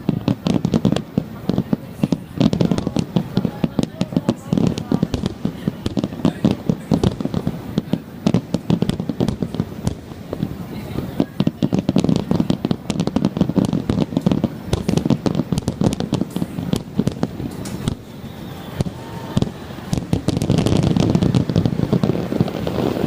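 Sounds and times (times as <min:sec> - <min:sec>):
fireworks bangs and crackles: 0:00.0 - 0:23.0.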